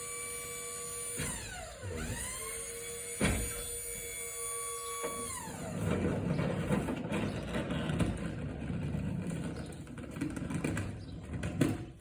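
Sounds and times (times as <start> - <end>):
motor whine sliding down: 1.1 - 6.0.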